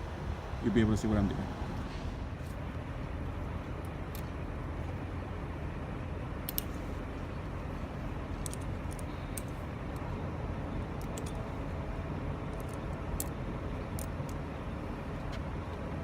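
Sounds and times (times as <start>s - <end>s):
vehicle rumble: 0.0s - 16.0s
light metallic clicks: 6.4s - 6.7s.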